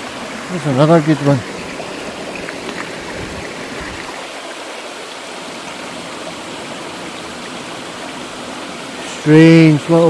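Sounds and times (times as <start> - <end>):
river running over stones: 0.0 - 10.0.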